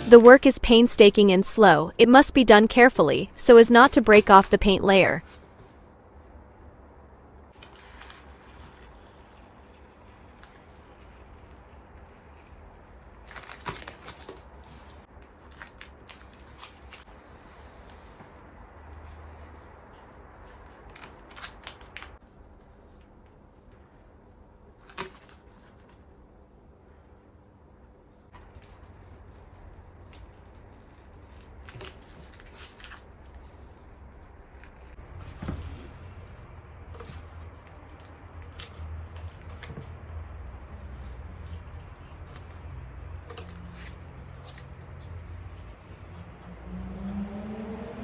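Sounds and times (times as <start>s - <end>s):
tape being peeled off: 28.4s - 33.7s.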